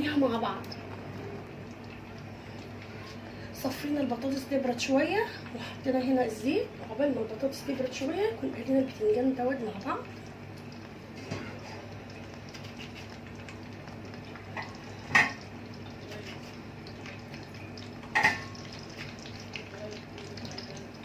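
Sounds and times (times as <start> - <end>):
faint cooking hiss: 0.0 - 21.0.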